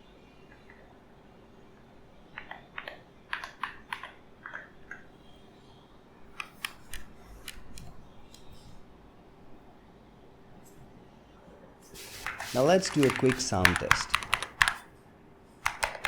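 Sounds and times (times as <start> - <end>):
mechanical keyboard keys clicking: 12.4 - 14.8, 15.6 - 16.0.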